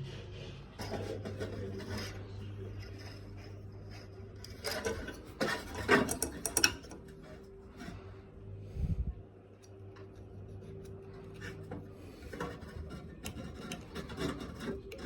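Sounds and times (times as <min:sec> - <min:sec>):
steady low hum: 0:00.0 - 0:15.0
small metal parts scraping and clicking: 0:00.8 - 0:07.4, 0:12.2 - 0:15.0.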